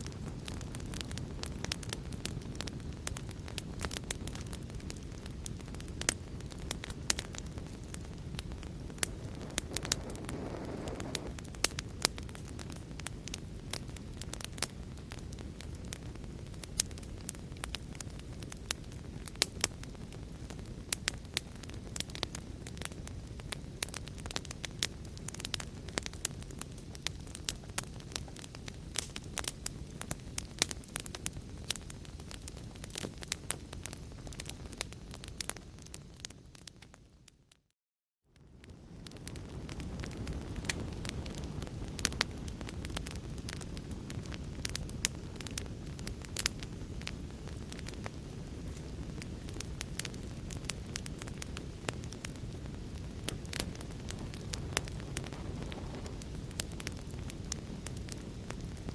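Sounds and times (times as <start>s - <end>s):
fireplace fire crackling: 0.0s - 37.5s, 38.4s - 58.9s.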